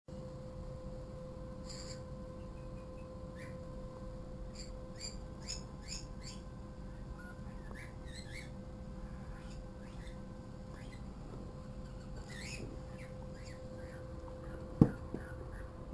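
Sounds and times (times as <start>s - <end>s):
steady hum: 0.1s - 15.9s
small birds chirping: 1.6s - 3.7s, 4.5s - 15.9s.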